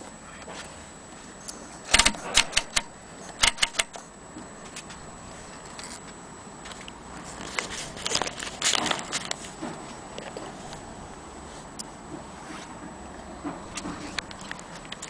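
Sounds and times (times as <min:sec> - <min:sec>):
typewriter clacking: 0:01.9 - 0:04.0.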